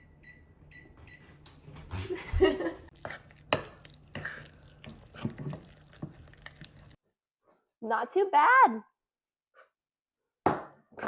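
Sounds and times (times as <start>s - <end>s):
sticky batter being stirred: 2.9s - 7.0s.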